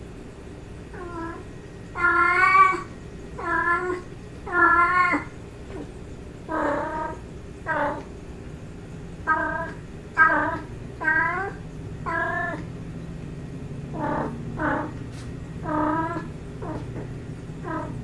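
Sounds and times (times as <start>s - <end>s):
cat meowing: 0.9s - 5.3s, 6.5s - 8.1s, 9.2s - 12.7s, 13.9s - 15.0s, 15.6s - 18.0s.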